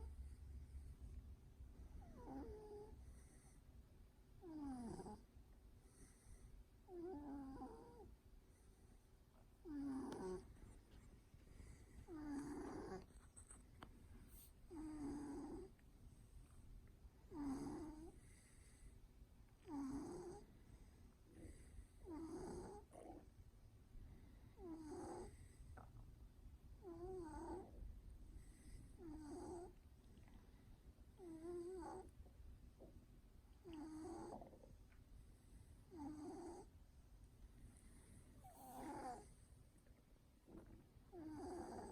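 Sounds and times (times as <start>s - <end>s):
cat snoring: 1.9s - 3.6s, 4.4s - 8.1s, 9.6s - 10.5s, 11.6s - 13.1s, 14.3s - 15.7s, 17.2s - 18.8s, 19.6s - 20.5s, 21.3s - 23.3s, 24.6s - 25.9s, 26.8s - 29.8s, 31.2s - 32.1s, 33.6s - 34.7s, 35.9s - 36.7s, 37.8s - 39.5s, 40.5s - 41.9s.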